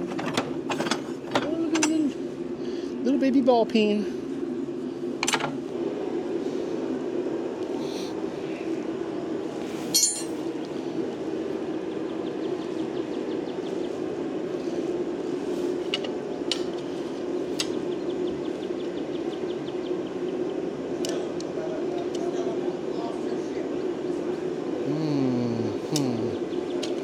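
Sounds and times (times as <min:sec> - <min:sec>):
steady low hum: 0:00.0 - 0:27.0
metal hand tools clinking: 0:10.0 - 0:10.4.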